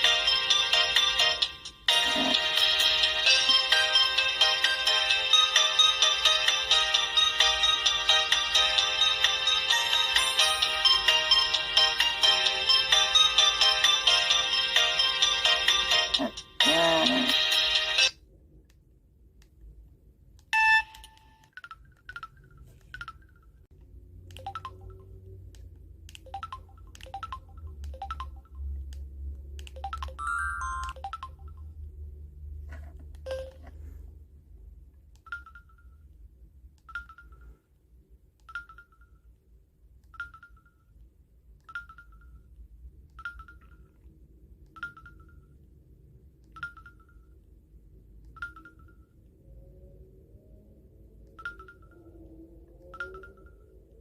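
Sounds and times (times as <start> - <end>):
phone key beeps: 29.7 - 31.3
short electronic melody: 30.2 - 31.1.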